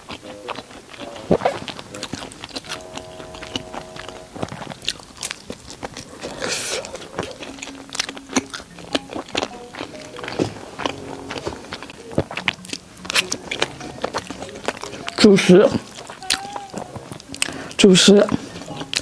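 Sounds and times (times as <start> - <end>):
biting and chewing food: 0.0 - 19.0
steady hum-like tone: 1.0 - 16.2.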